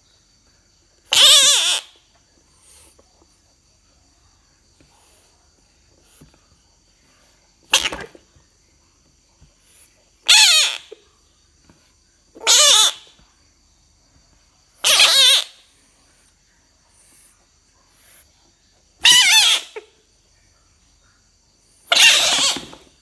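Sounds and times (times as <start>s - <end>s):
frog crying: 1.1s - 2.1s, 7.7s - 8.2s, 10.2s - 11.0s, 12.4s - 13.2s, 14.8s - 15.6s, 19.0s - 20.0s, 21.8s - 22.8s.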